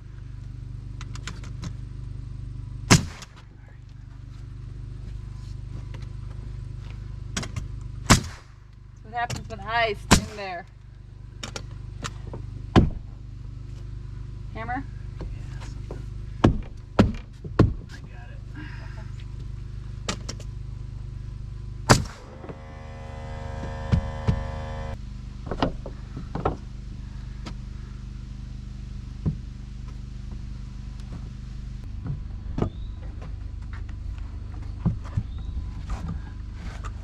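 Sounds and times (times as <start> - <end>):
low hum: 18.2 - 37.0.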